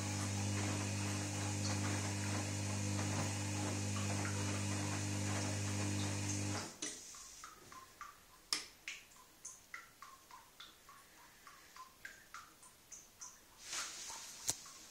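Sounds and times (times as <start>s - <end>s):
washing machine hum: 0.0s - 6.8s
water drips: 0.0s - 14.9s.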